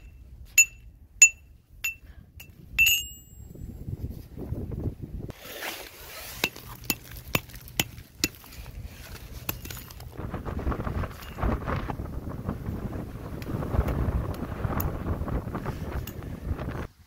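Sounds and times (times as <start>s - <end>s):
ringing metallic clink: 0.0s - 3.6s.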